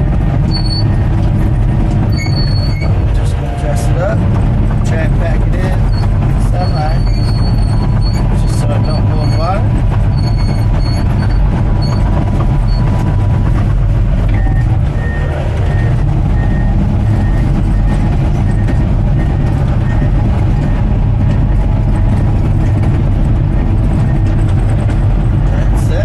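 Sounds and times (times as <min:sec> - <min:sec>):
bulldozer diesel engine running: 0:00.0 - 0:26.0
faint high beep: 0:14.3 - 0:18.8.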